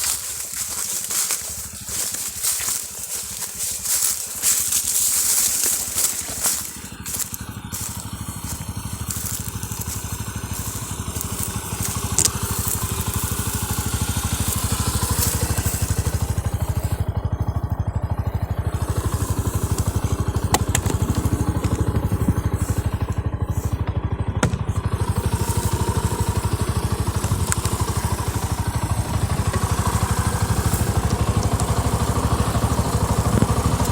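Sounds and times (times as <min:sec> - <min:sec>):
crackling noise: 0:00.0 - 0:17.1
motorcycle engine running: 0:00.0 - 0:33.9.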